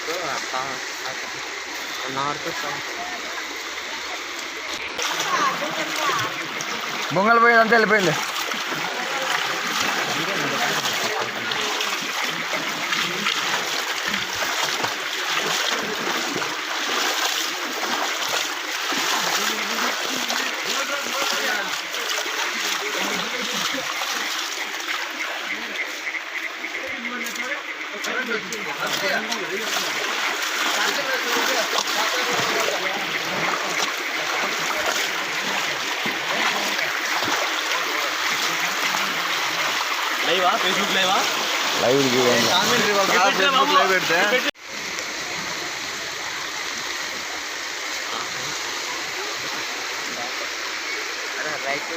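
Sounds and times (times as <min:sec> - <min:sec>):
floodwater rushing: 0:00.0 - 0:51.9.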